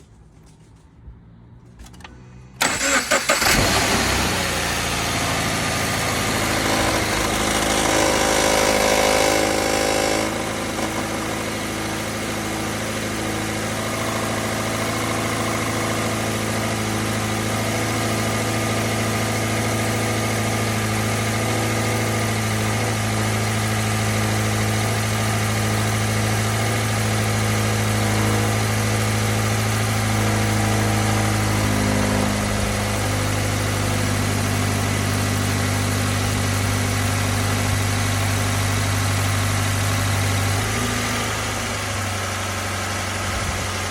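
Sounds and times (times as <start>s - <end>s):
car engine starting and idling: 0.0s - 17.5s, 28.6s - 43.9s.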